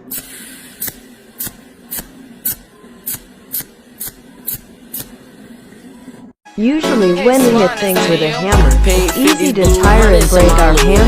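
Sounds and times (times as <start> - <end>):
welding arc hissing bursts: 0.0 - 6.1.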